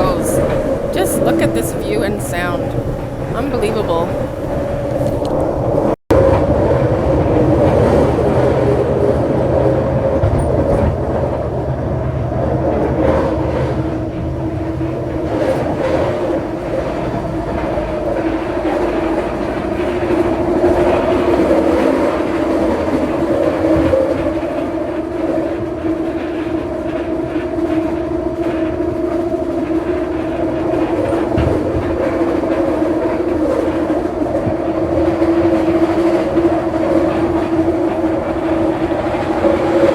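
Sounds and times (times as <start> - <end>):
train rumble: 0.0 - 39.9
wheel clatter: 2.3 - 6.0.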